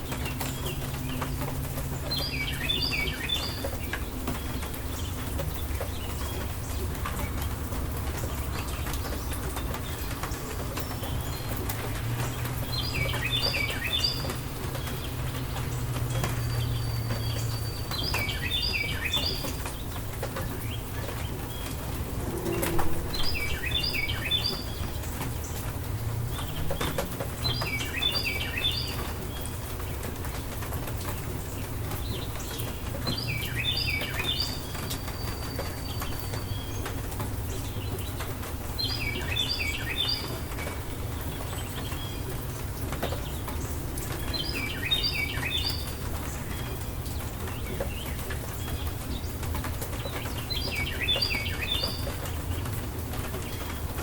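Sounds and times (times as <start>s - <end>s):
songbird chirping: 0.0s - 54.0s
steady rain falling: 0.0s - 54.0s
low rumble: 21.2s - 25.2s.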